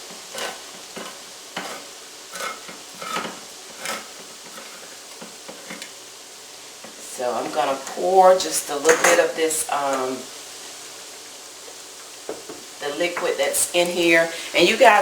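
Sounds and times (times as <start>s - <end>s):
onions sizzling in a pan: 0.0s - 15.0s.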